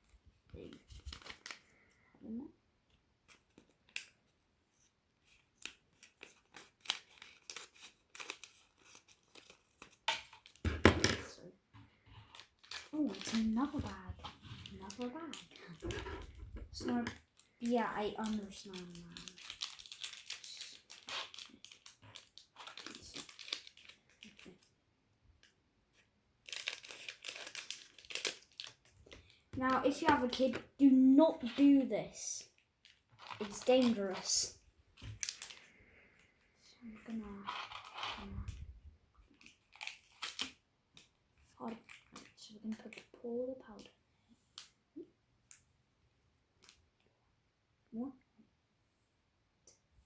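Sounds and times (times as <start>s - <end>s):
scissors cutting plastic packet: 5.4s - 10.6s, 12.4s - 14.1s, 14.7s - 16.0s, 16.9s - 24.7s, 26.4s - 30.6s, 33.2s - 34.4s, 39.4s - 40.6s
plastic bag crinkling: 12.4s - 24.6s, 26.4s - 30.0s, 35.2s - 35.9s.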